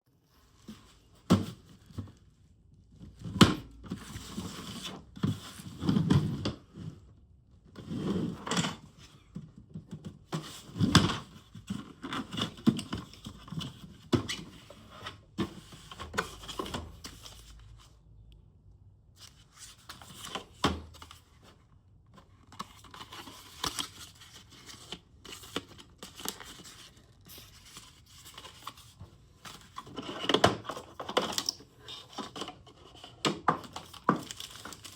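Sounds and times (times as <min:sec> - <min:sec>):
box packaging handling noise: 0:07.8 - 0:18.0, 0:19.2 - 0:34.9.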